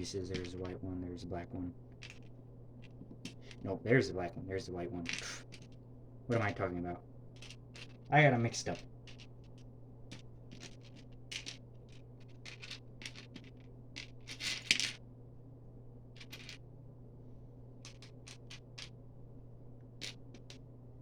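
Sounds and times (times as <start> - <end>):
plastic toy bricks clattering: 2.0 - 2.3, 10.1 - 14.9, 17.8 - 18.9.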